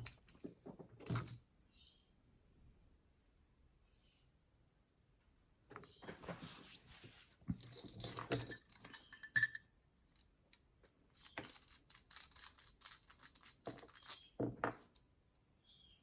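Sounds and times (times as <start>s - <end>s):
small metal tools clinking: 7.6s - 10.4s, 11.1s - 15.0s.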